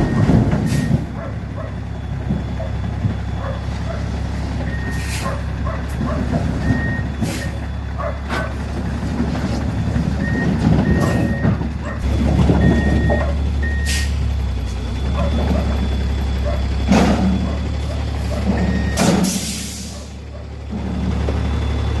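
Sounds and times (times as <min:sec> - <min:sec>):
reversing alarm beeps: 0:00.0 - 0:04.0, 0:04.6 - 0:05.7, 0:06.6 - 0:08.1, 0:10.1 - 0:20.4
truck engine running: 0:00.0 - 0:22.0.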